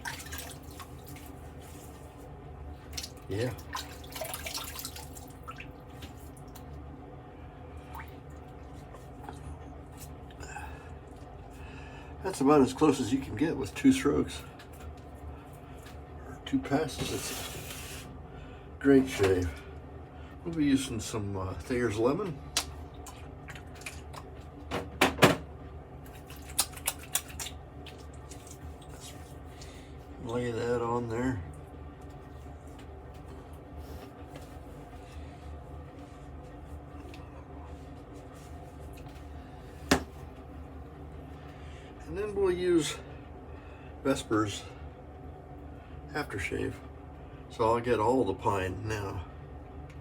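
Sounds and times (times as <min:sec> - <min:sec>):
liquid splashing: 0:00.0 - 0:01.4, 0:02.8 - 0:06.7.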